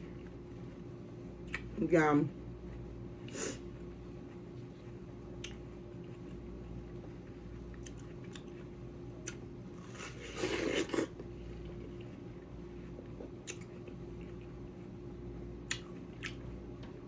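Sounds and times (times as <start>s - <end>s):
chewing watermelon: 2.8s - 14.6s, 15.6s - 16.5s
wet mouth clicks: 13.4s - 13.7s, 15.7s - 16.4s.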